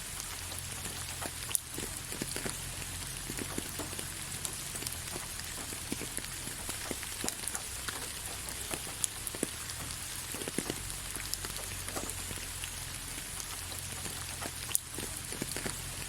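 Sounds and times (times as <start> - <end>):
gentle rain hiss: 0.0 - 16.0
raindrops ticking: 0.0 - 16.0.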